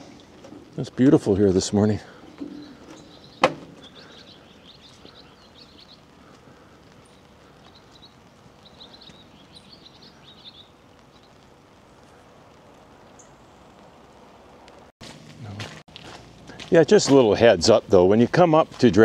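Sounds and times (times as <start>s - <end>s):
outdoor hiss: 0.0s - 19.0s
songbird chirping: 0.8s - 11.5s, 13.0s - 13.8s.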